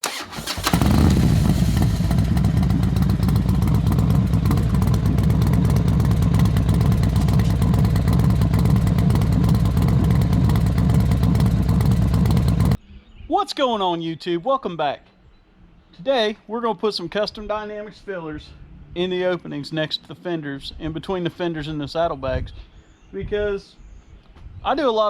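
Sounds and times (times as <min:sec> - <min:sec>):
motorcycle engine rumbling: 0:00.0 - 0:12.8.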